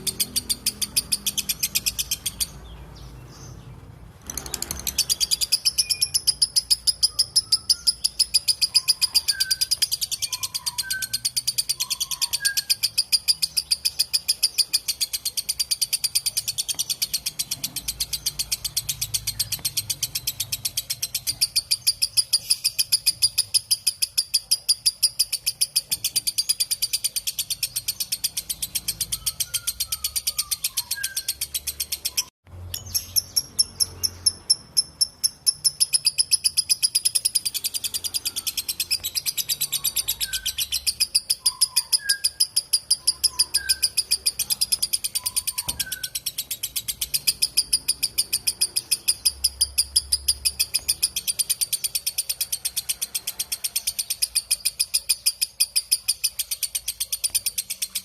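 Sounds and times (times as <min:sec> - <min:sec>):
lovebird chattering trill: 0:00.0 - 0:58.0
faint bird whistles: 0:04.5 - 0:13.4, 0:29.1 - 0:31.4, 0:38.1 - 0:46.2.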